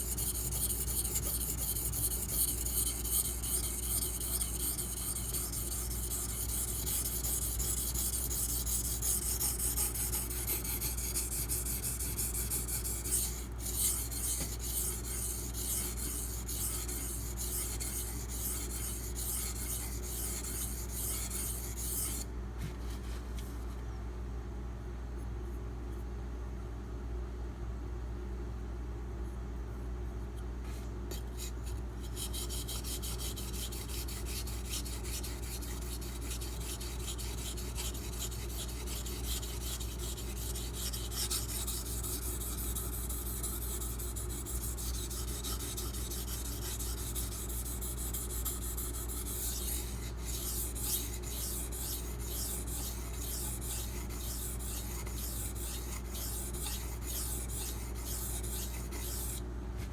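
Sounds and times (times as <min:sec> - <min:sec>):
knife scraping on sharpening stone: 0:00.1 - 0:22.2, 0:43.7 - 0:59.4.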